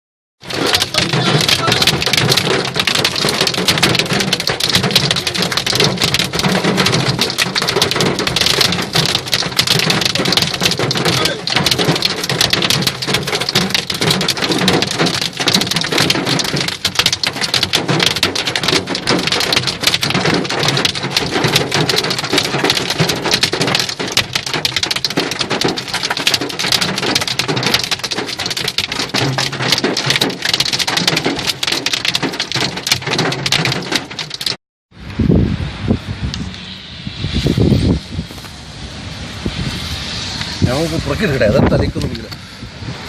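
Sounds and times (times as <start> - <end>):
hail and heavy rain clattering: 0.4 - 34.6.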